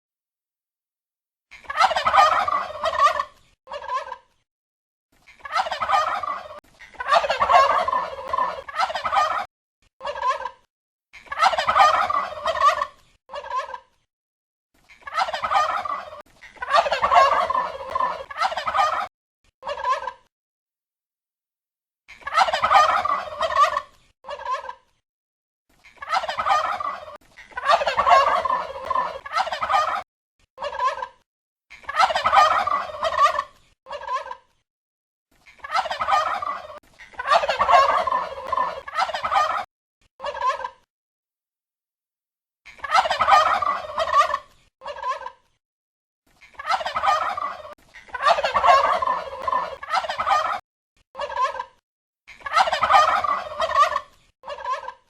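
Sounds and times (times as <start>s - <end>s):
turkey gobbling: 1.5s - 4.3s, 5.3s - 13.9s, 14.9s - 20.3s, 22.1s - 24.8s, 25.9s - 30.0s, 30.6s - 34.5s, 35.5s - 40.9s, 42.7s - 45.4s, 46.4s - 50.6s, 51.2s - 55.0s.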